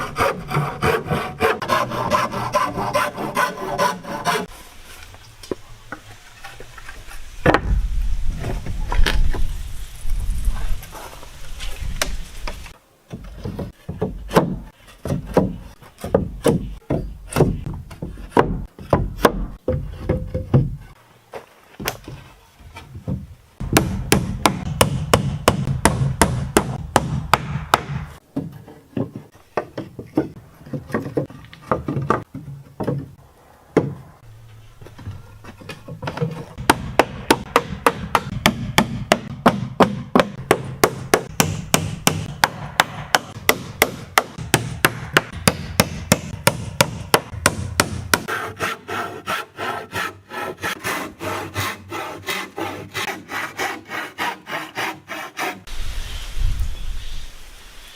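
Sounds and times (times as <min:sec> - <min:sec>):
rapid hammer strikes: 0:23.6 - 0:28.2, 0:36.6 - 0:48.3.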